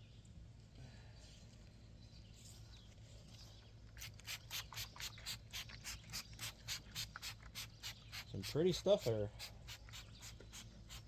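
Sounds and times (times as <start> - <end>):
rubbing strokes on wood: 4.0 - 11.0.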